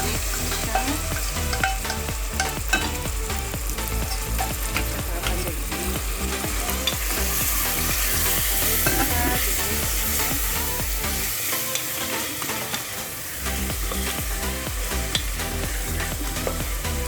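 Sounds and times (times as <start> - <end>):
spoon knocking and scraping pot: 0.0 - 3.1, 8.7 - 9.2
meat sizzling in hot oil: 0.0 - 17.0.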